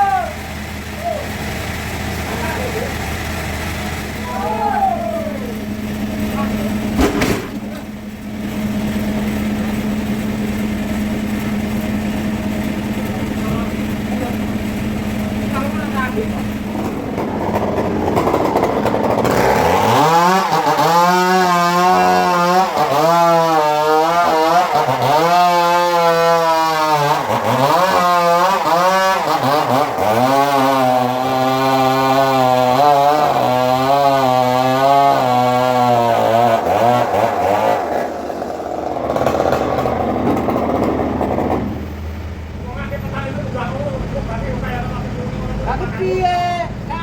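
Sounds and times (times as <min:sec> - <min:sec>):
sawmill saw cutting log: 0:05.4 - 0:42.2.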